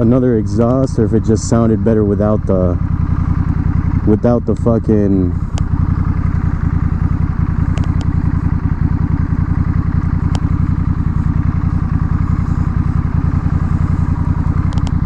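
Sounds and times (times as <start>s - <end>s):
motorcycle engine idling: 0.0s - 15.0s
faint sharp clicks: 14.6s - 15.0s.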